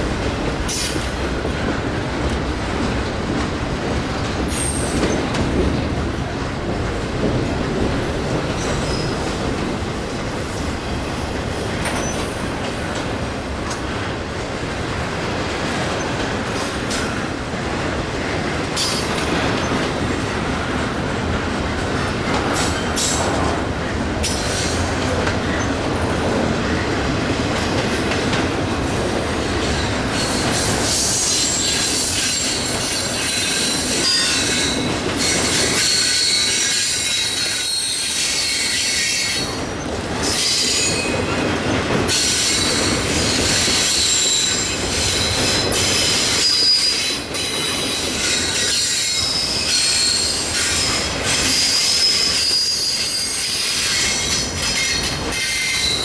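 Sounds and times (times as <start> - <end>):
train wheels rumbling on rail: 0.0 - 56.0
high-pitched wheel squeal: 48.2 - 56.0.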